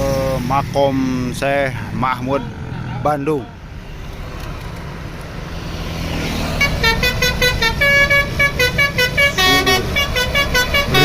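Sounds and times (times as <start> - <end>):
bus engine rumbling: 0.0 - 11.0
musical horn playing tune: 6.6 - 11.0.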